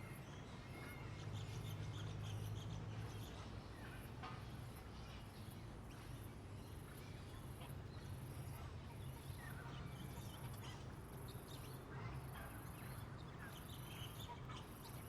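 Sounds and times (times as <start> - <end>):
songbirds chirping: 0.0 - 15.0.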